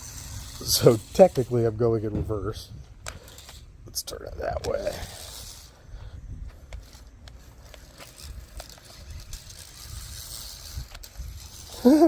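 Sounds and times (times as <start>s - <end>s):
rc car tracks crackling vegetation: 0.0s - 12.0s
small clicks: 6.7s - 11.8s.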